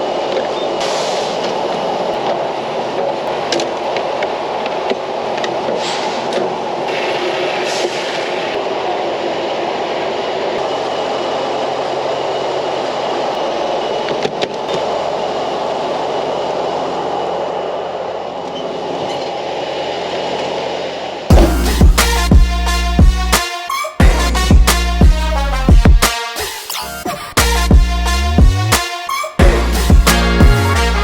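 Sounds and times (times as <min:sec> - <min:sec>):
road and wind noise: 0:00.0 - 0:23.2
diesel truck engine drone: 0:00.0 - 0:23.4, 0:29.4 - 0:31.0.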